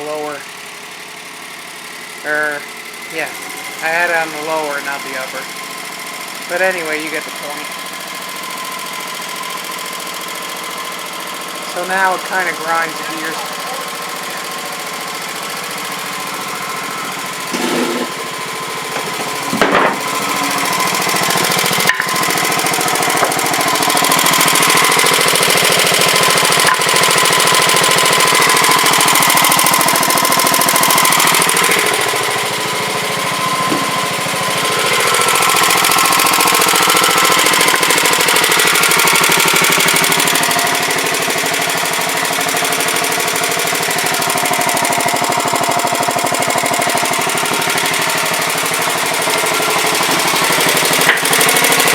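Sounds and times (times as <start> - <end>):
tractor engine hammering: 0.1 - 51.9
sharp knocks: 18.9 - 20.1.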